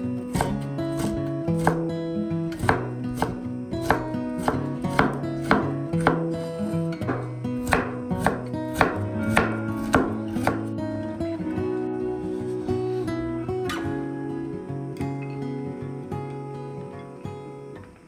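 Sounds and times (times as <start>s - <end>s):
acoustic guitar music: 0.0s - 18.0s
knife chopping on cutting board: 0.3s - 1.9s, 2.5s - 6.4s, 7.0s - 10.7s.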